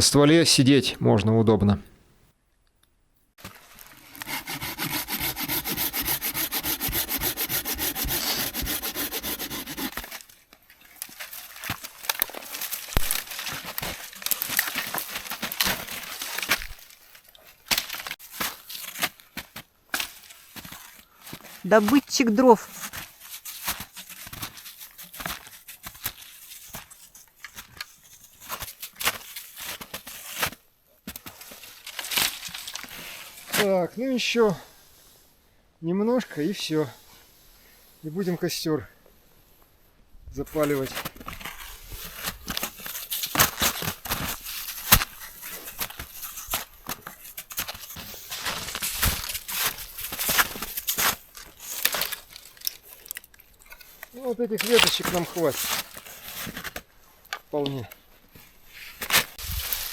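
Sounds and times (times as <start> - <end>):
rustling: 3.4 - 33.8, 40.4 - 59.9
twigs snapping: 48.5 - 55.5.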